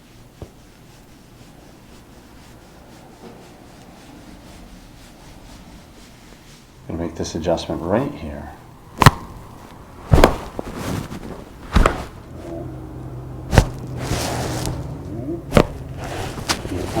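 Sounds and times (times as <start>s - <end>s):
spine cracking: 8.8s - 17.0s.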